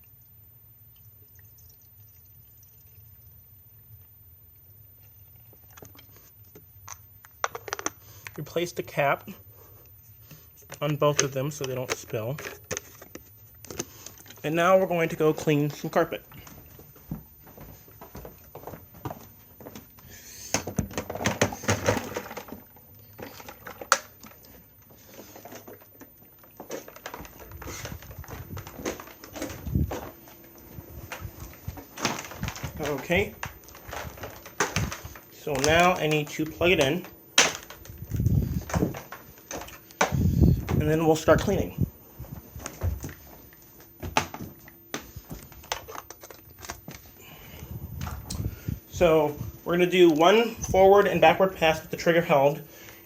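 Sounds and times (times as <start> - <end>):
plastic knocks and rattles of cleaner: 20.5 - 24.5, 25.1 - 41.6, 44.0 - 47.0.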